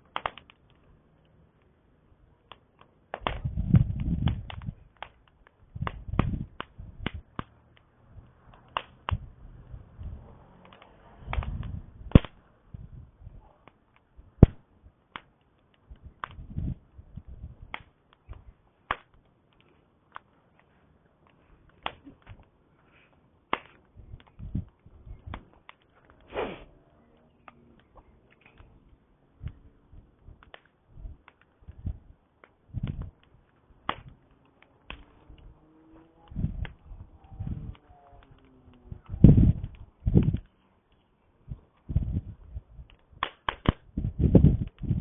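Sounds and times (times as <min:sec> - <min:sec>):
campfire crackling: 0:00.0 - 0:45.0
low rumbles: 0:05.6 - 0:15.0, 0:15.8 - 0:18.7, 0:23.8 - 0:40.5, 0:41.4 - 0:45.0.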